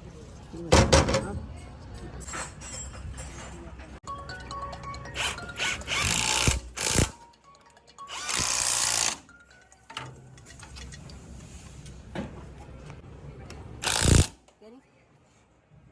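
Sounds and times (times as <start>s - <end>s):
background music: 4.0s - 11.2s.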